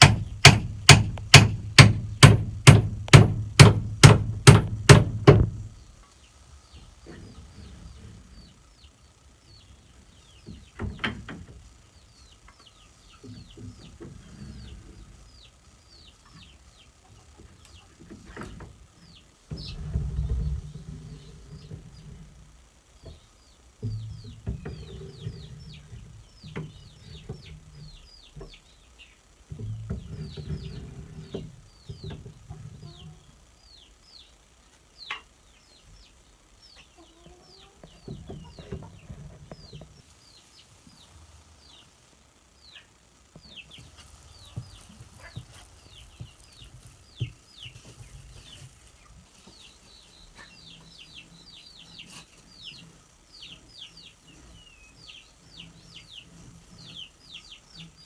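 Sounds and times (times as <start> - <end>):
chicks peeping: 4.3 - 22.4, 23.0 - 58.0
chickens clucking: 23.0 - 34.0, 34.8 - 58.0.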